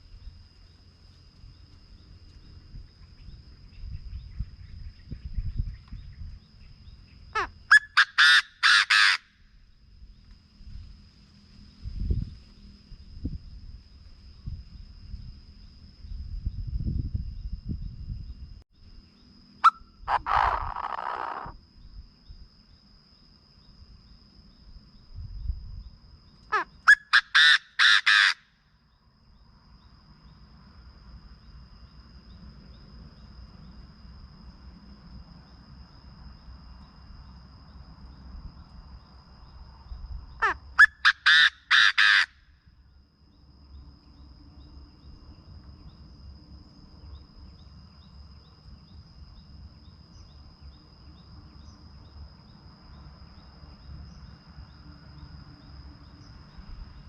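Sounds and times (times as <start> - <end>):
bird calling harsh notes: 7.4 - 9.3, 19.6 - 21.5, 26.5 - 28.4, 40.4 - 42.4.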